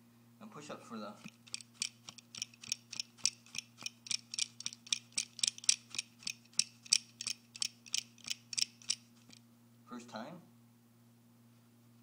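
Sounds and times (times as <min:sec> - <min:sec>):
steady low hum: 0:00.0 - 0:12.0
rapid even ticking: 0:01.2 - 0:09.4.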